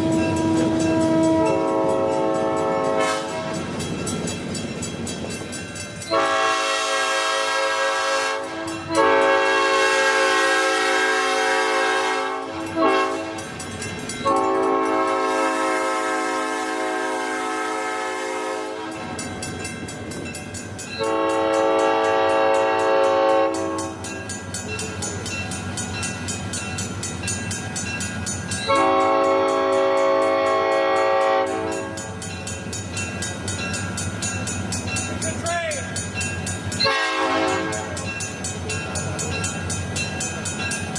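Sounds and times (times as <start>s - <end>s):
locomotive air horn blasts: 0.0s - 3.7s, 6.1s - 13.5s, 14.2s - 19.1s, 21.0s - 24.0s, 28.7s - 31.9s, 36.8s - 38.0s
low locomotive rumble: 0.0s - 40.9s.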